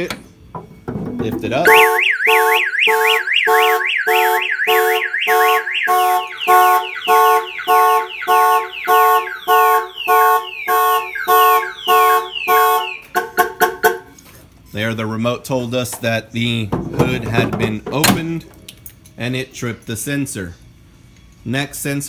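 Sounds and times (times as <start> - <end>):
car alarm siren: 1.6 - 14.1
pulsing steady tone: 1.7 - 7.7.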